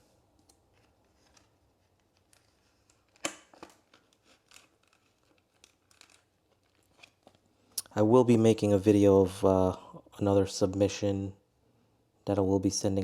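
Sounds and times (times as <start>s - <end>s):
plastic clicks and scrapes: 0.4s - 7.4s.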